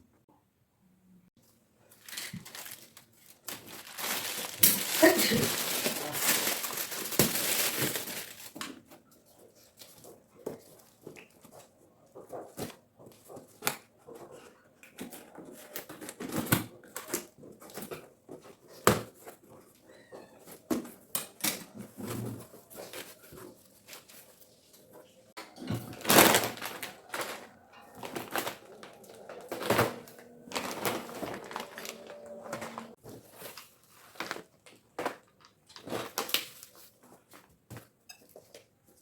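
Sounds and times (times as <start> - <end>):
plastic packaging crinkling: 1.8 - 8.9, 25.4 - 37.0.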